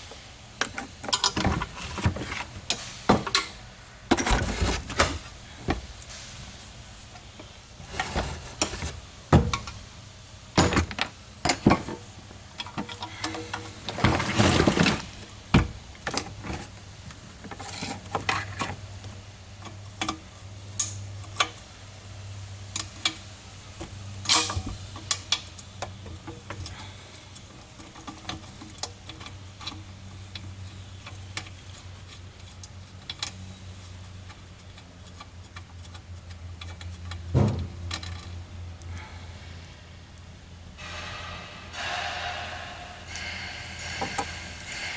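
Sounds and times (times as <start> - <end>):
metal tools clinking: 10.6 - 12.0.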